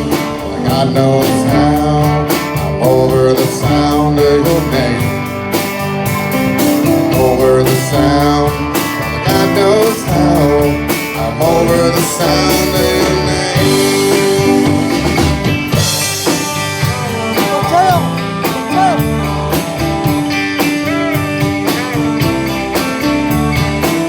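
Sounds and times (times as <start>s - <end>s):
electric guitar with bent notes: 0.0s - 24.0s
steady drum beat: 0.0s - 24.0s.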